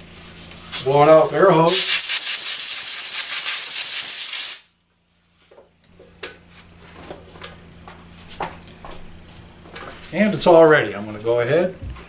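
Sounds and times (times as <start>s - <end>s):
compressed air hose hissing: 1.7s - 4.7s.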